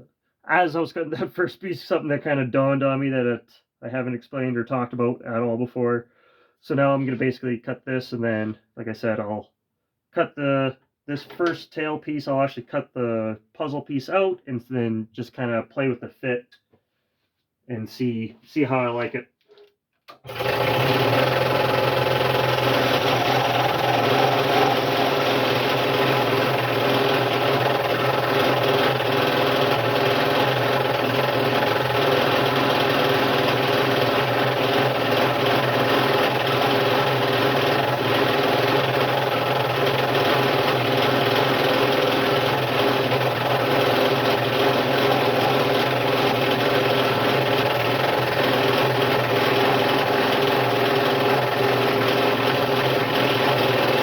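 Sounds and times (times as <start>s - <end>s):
scroll saw cutting wood: 20.1s - 54.0s.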